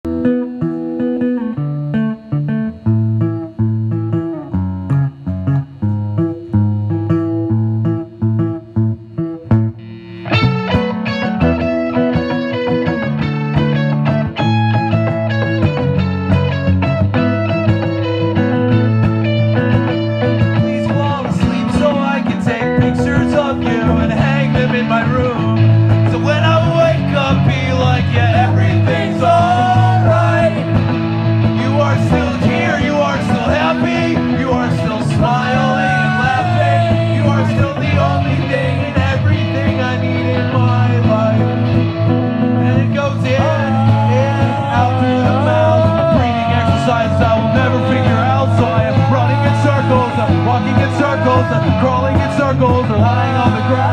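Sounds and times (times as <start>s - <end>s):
bass guitar: 0.0s - 53.9s
electric guitar: 0.0s - 53.9s
drums: 3.4s - 53.9s
person singing: 19.7s - 53.9s.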